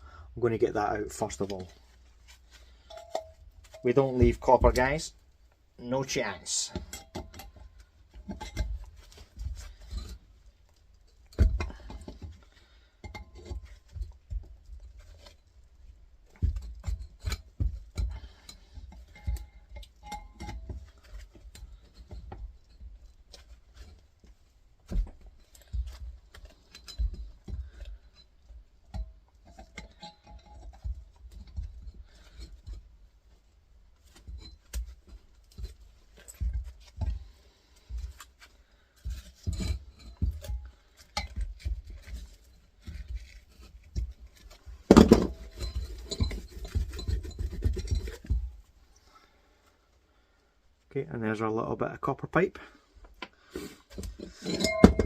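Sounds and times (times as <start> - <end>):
hand tools knocking on steel: 54.3 - 55.0.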